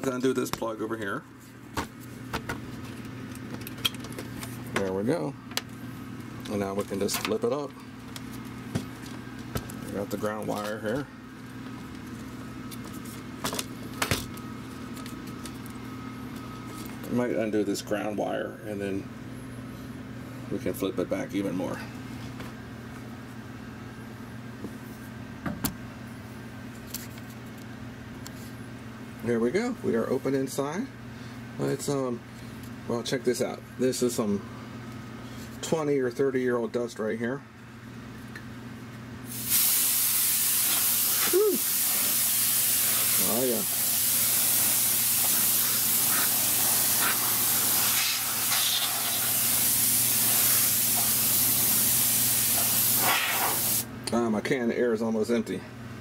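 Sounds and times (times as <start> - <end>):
steady low hum: 0.0 - 56.0
compressed air spraying: 39.3 - 53.9.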